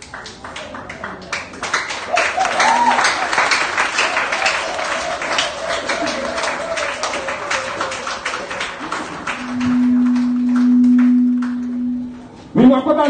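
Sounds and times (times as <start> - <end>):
crowd clapping rhythmically: 0.0 - 12.2
steady low note: 9.3 - 12.4.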